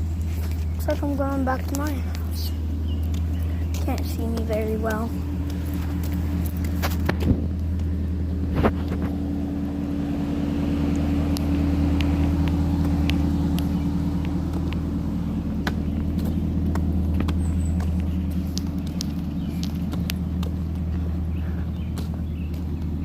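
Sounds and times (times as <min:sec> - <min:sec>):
vehicle engine droning: 0:00.0 - 0:23.0.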